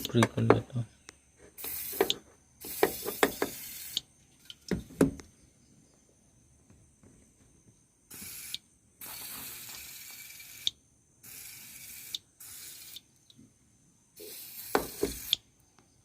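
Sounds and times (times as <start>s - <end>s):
aerosol can spraying: 1.6s - 4.1s, 8.1s - 13.0s, 14.2s - 15.4s.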